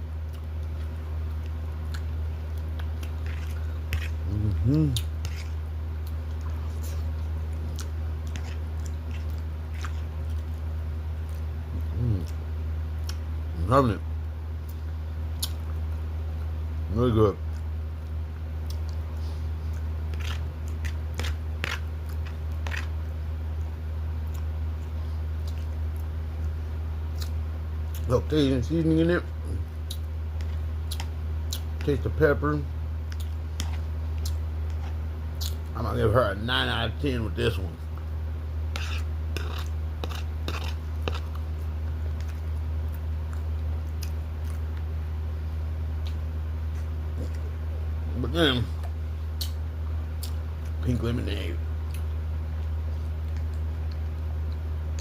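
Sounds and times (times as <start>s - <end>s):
steady low hum: 0.0s - 55.0s
person chewing food: 0.2s - 12.4s, 13.0s - 13.3s, 14.6s - 16.0s, 17.4s - 28.1s, 29.5s - 31.9s, 33.0s - 35.7s, 38.7s - 44.9s, 45.9s - 47.8s, 48.8s - 50.8s, 51.8s - 55.0s.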